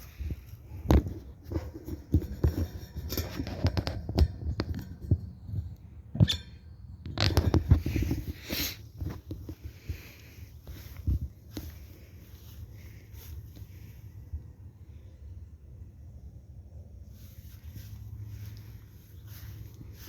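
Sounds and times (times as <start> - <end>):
footsteps: 7.6 - 13.8, 17.1 - 20.0
rustling: 17.1 - 20.0.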